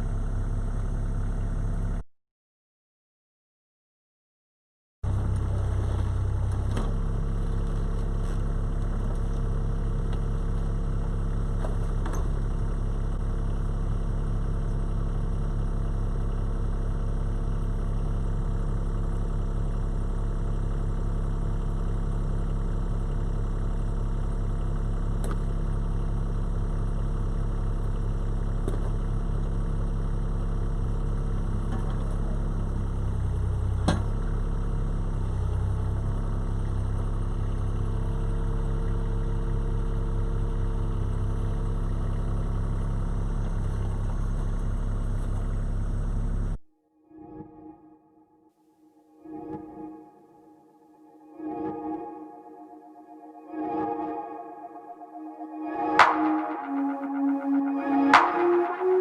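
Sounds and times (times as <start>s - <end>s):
loader engine running: 5.0s - 46.6s.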